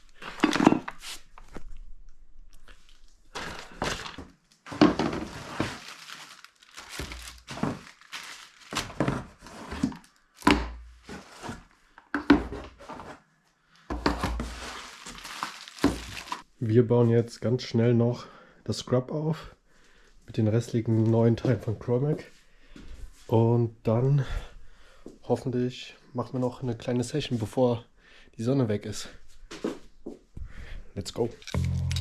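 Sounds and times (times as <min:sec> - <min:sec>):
plastic wrapping crinkling and tearing: 0:02.6 - 0:10.4, 0:14.6 - 0:16.5
cardboard boxes thunking: 0:06.9 - 0:08.1.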